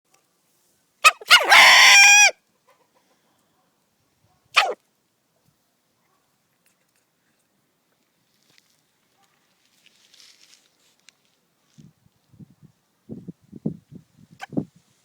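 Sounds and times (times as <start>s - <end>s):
rooster sneezing call: 4.6s - 4.8s.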